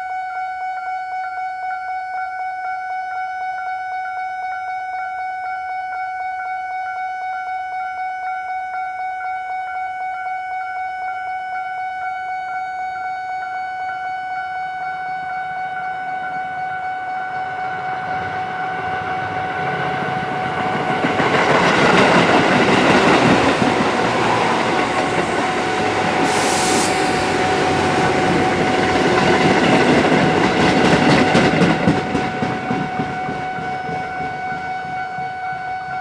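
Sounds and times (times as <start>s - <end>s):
level crossing warning bell: 15.6s - 36.0s
electric train rumbling past: 15.9s - 36.0s
train wheels clicking over rail joints: 17.3s - 36.0s
brief hiss: 23.9s - 29.0s.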